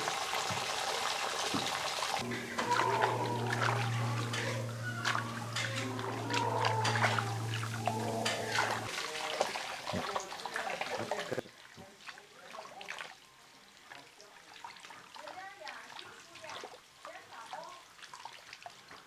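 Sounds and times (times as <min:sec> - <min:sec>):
water running and splashing: 0:00.0 - 0:11.4
steady low hum: 0:02.2 - 0:08.9.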